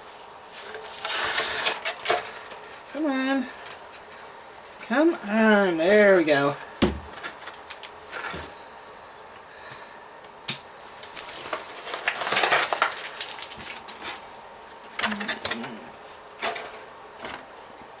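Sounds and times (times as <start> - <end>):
plastic packaging crinkling: 11.0 - 15.5.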